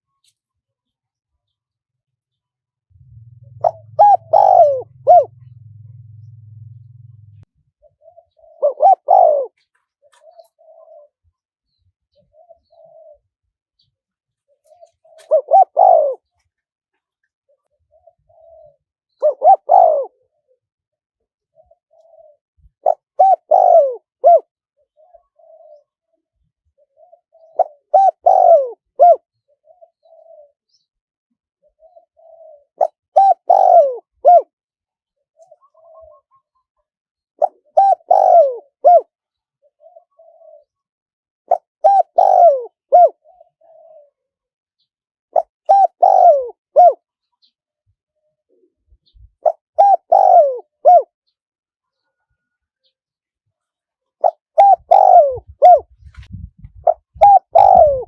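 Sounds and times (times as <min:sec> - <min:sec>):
dove cooing: 0:02.9 - 0:13.9, 0:14.5 - 0:16.4, 0:17.5 - 0:20.6, 0:21.4 - 0:30.9, 0:31.6 - 0:34.5, 0:35.4 - 0:36.7, 0:37.4 - 0:40.9, 0:41.5 - 0:44.4, 0:45.4 - 0:47.5, 0:48.4 - 0:51.1, 0:54.2 - 0:58.0.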